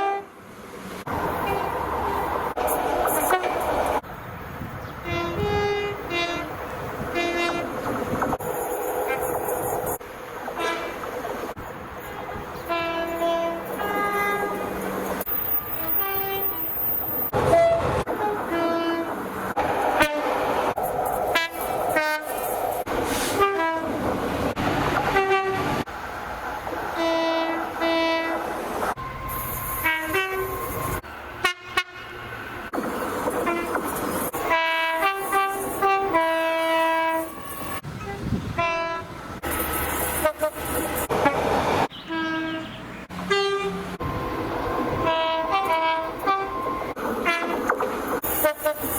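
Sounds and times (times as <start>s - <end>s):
two-tone train horns: 0.0s - 0.4s, 3.1s - 3.7s, 5.0s - 7.8s, 10.5s - 11.1s, 12.0s - 19.3s, 20.0s - 20.5s, 21.3s - 22.4s, 23.2s - 24.0s, 25.0s - 25.9s, 27.0s - 32.4s, 33.4s - 33.8s, 34.4s - 37.4s, 38.0s - 39.2s, 40.1s - 44.0s, 44.9s - 48.9s
running trains: 0.0s - 48.9s.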